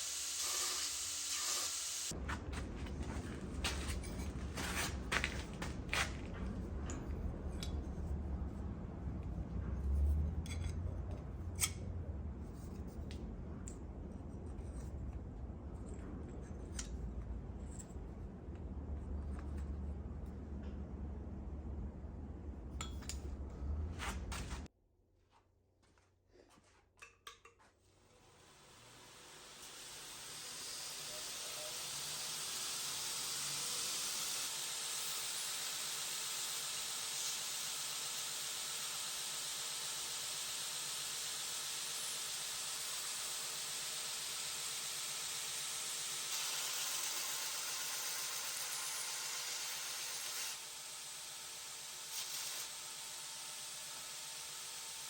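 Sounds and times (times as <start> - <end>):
gas burner hissing: 0.0 - 2.2, 28.2 - 55.0.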